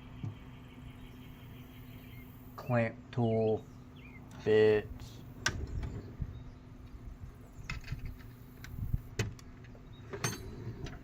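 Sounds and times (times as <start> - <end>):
metal tools clinking in drawer: 10.2 - 10.6.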